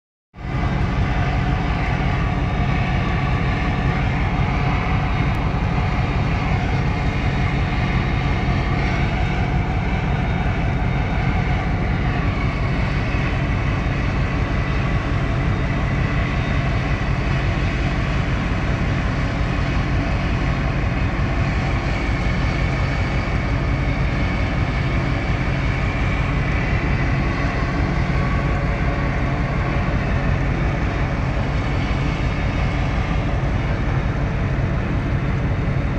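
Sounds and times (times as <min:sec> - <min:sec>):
large engine droning: 0:00.4 - 0:35.9.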